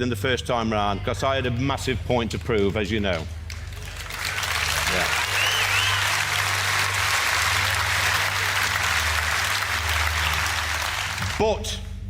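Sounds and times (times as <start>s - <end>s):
audience applauding: 3.5s - 11.5s.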